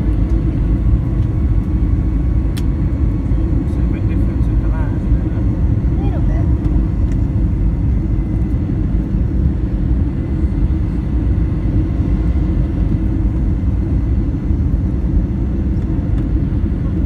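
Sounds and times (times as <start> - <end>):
low rumble of engines and airflow: 0.0 - 17.0.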